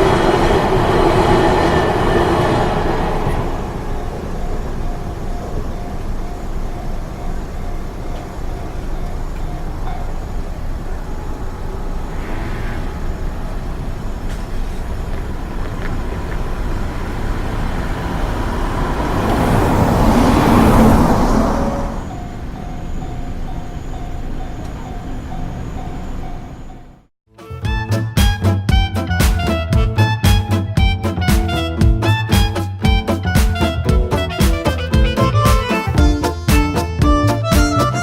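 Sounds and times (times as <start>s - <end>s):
vehicle passing loudly: 0.0s - 7.9s, 11.1s - 26.5s
railroad crossing bell ringing: 0.0s - 15.6s, 19.5s - 27.1s
road traffic noise: 0.0s - 27.1s, 28.0s - 38.0s.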